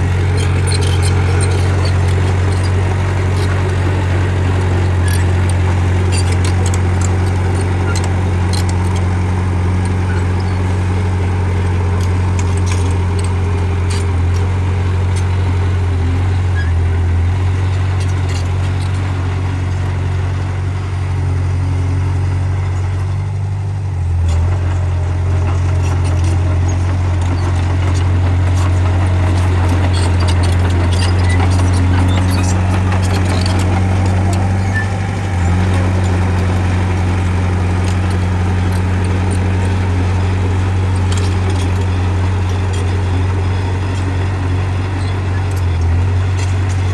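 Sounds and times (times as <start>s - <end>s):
bulldozer diesel engine humming: 0.0s - 46.9s
faint clicks and clanks: 0.3s - 10.8s, 11.6s - 15.7s, 24.3s - 46.9s.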